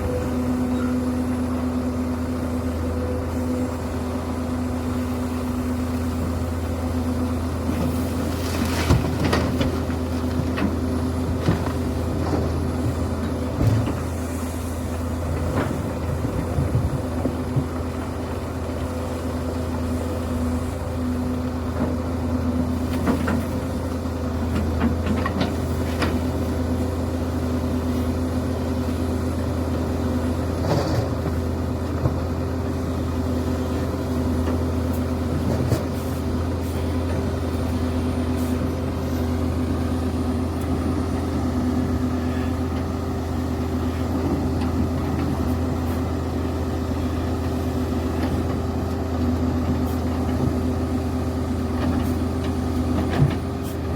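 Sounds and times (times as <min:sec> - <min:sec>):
excavator diesel engine running: 0:00.0 - 0:53.9.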